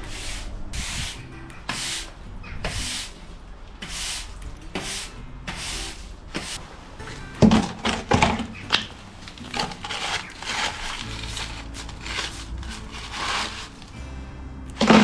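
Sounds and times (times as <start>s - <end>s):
brush scrubbing paving: 0.0s - 3.2s, 3.8s - 6.7s, 7.4s - 14.0s, 14.8s - 15.0s
faint background music: 0.0s - 15.0s
scraping and knocking: 7.4s - 14.0s, 14.8s - 15.0s.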